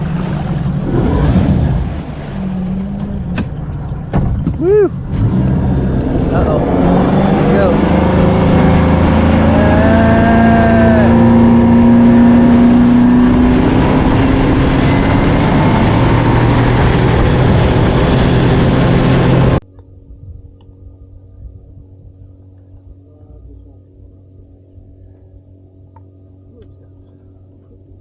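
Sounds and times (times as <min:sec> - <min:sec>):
outboard motor running: 0:00.0 - 0:28.0
faint hum: 0:19.6 - 0:28.0.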